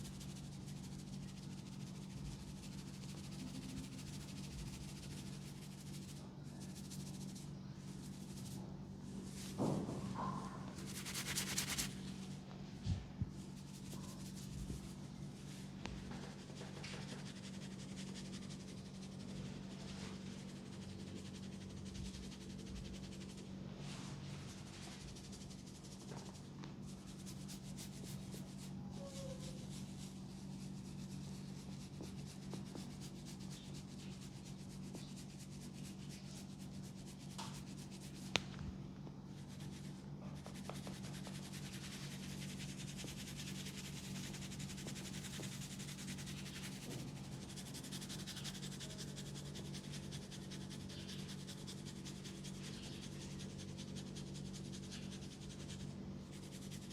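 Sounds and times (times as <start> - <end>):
steady low hum: 0.0 - 56.9
hands rubbing skin: 1.0 - 12.5, 30.7 - 38.6, 39.3 - 53.4.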